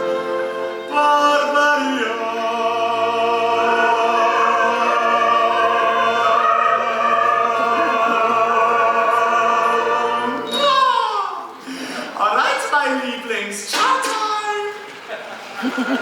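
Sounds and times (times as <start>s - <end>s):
musical accompaniment: 0.0s - 11.6s
choir-like voices: 0.0s - 12.2s
man singing operatically: 0.8s - 6.6s.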